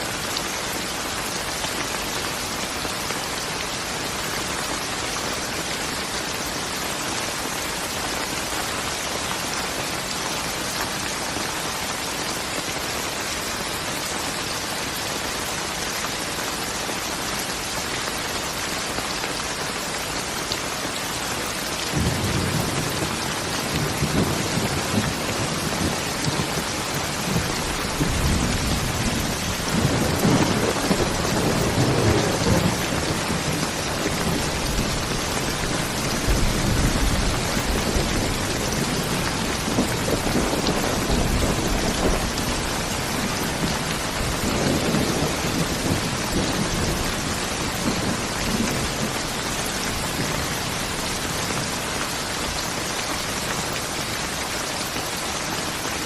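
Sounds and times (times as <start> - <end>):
rain falling: 0.0 - 56.0
rolling thunder rumble: 21.9 - 49.3.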